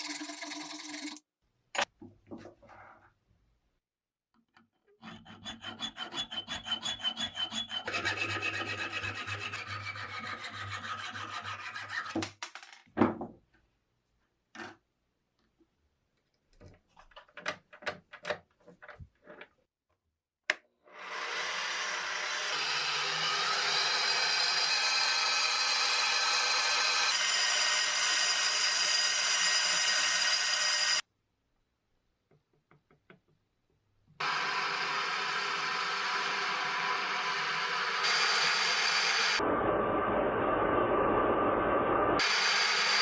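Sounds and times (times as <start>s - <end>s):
clicks and taps: 32.2s - 33.8s.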